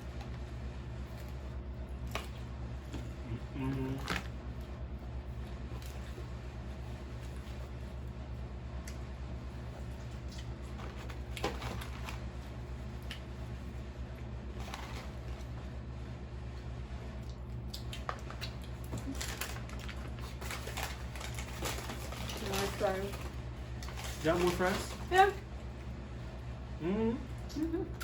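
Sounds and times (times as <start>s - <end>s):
steady low hum: 0.0s - 28.0s
chewing and crunching: 8.8s - 15.6s, 17.2s - 25.1s.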